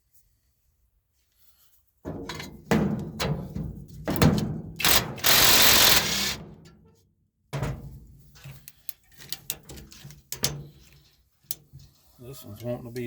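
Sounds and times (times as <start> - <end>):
metal knocks and clicks: 2.1 - 5.3
loud steady burst of noise: 4.8 - 6.4.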